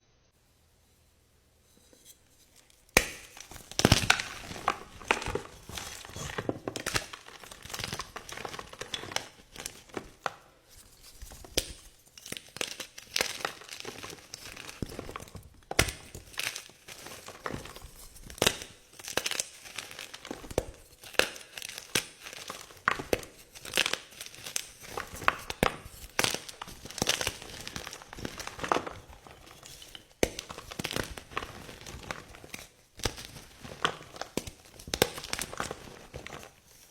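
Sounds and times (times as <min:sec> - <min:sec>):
chalk blocks crushed by hand: 0:02.9 - 0:10.4.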